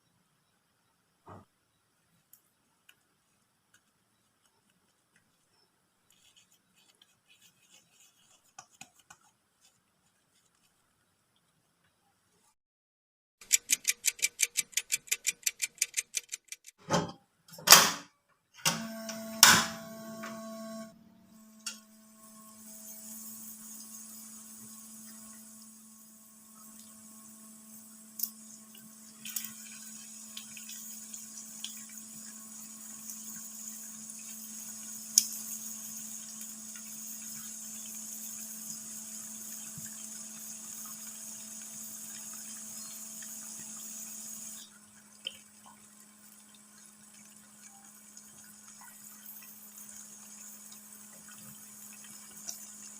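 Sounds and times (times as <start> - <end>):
sharp clicks: 13.4 - 16.8
steady appliance hum: 18.6 - 52.9.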